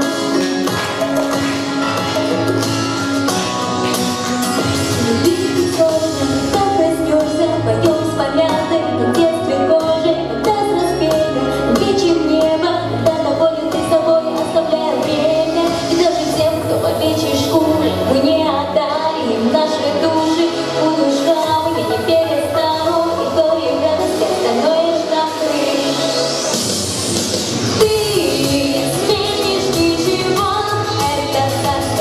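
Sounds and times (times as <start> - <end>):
steady percussion: 0.0 - 6.7
person singing: 4.9 - 26.5, 27.8 - 32.0.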